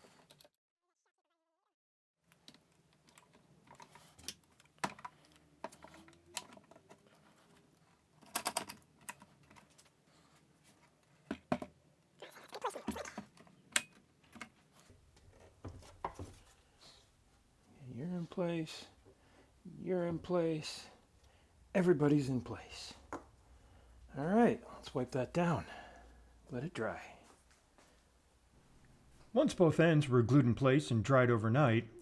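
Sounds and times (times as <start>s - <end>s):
wooden parts clicking and knocking: 2.4s - 9.9s.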